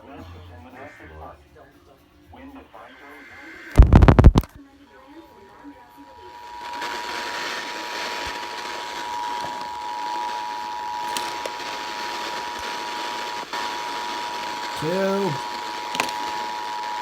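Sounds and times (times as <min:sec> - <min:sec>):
radio hiss: 0:03.0 - 0:04.5, 0:06.2 - 0:17.0.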